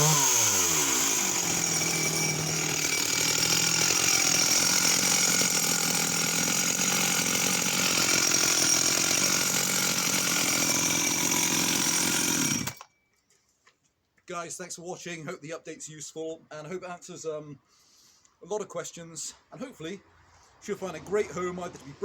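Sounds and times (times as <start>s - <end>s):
chainsaw running at high revs: 0.0s - 12.8s.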